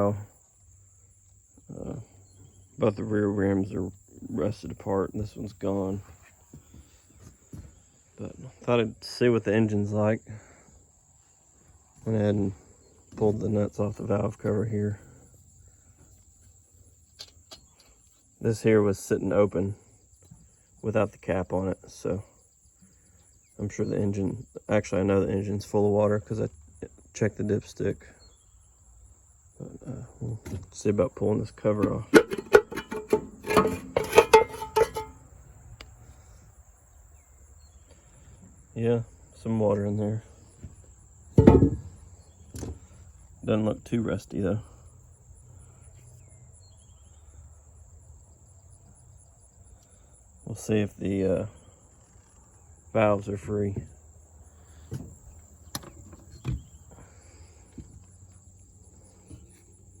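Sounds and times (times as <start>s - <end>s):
crickets trilling: 0.0s - 60.0s
metal clanks and rattles: 31.8s - 35.3s, 41.4s - 42.1s
knocks and clicks on engine valves: 41.4s - 41.9s.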